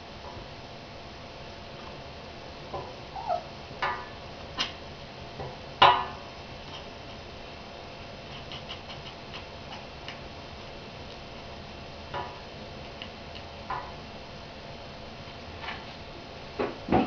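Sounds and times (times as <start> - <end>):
cat chirping: 3.0 - 3.6.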